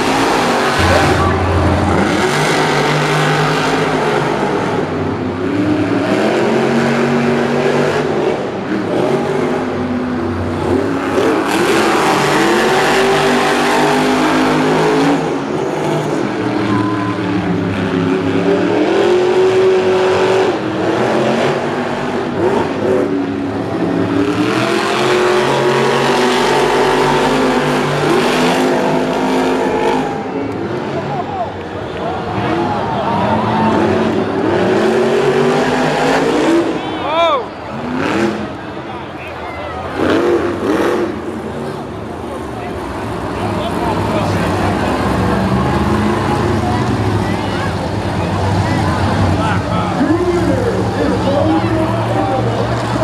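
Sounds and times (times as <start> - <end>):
monster truck engines revving: 0.0 - 53.0.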